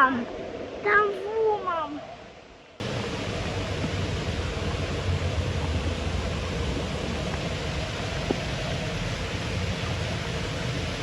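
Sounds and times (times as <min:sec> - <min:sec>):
waterfall rushing: 0:02.8 - 0:11.0.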